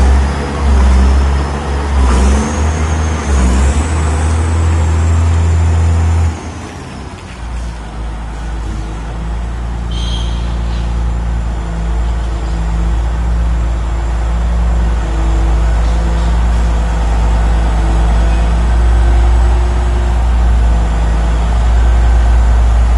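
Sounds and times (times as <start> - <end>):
diesel engine drone: 0.0 - 22.9
high squeal: 9.8 - 11.3.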